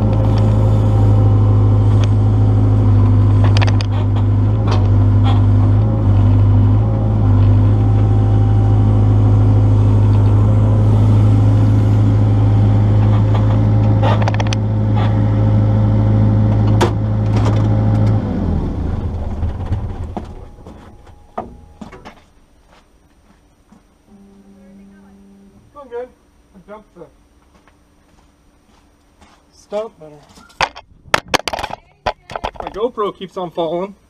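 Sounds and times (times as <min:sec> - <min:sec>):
engine winding down: 0:00.0 - 0:22.2
diesel engine running: 0:00.0 - 0:22.6.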